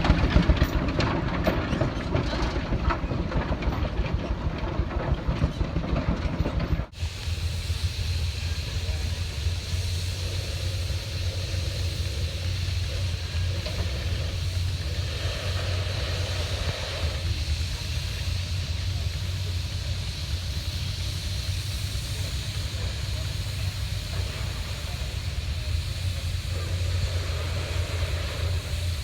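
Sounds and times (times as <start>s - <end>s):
machinery rumbling: 0.0s - 29.0s
constant high hiss: 6.9s - 29.0s.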